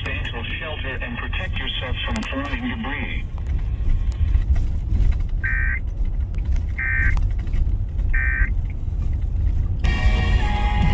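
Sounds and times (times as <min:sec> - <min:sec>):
steady low rumble: 0:00.0 - 0:10.9
digital data tone squawks: 0:05.4 - 0:05.8, 0:08.2 - 0:08.5.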